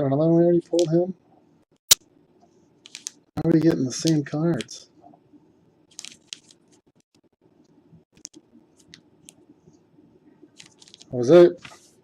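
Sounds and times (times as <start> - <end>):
trading cards rustling: 2.8 - 4.8, 5.9 - 6.8, 10.6 - 12.0.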